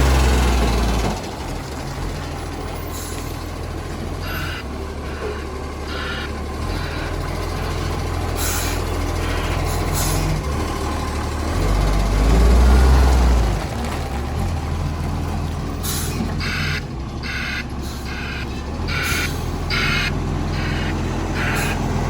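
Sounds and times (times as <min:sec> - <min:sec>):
garbage truck diesel engine running: 0:00.0 - 0:22.0
reversing beeper: 0:04.2 - 0:09.7, 0:16.4 - 0:21.9.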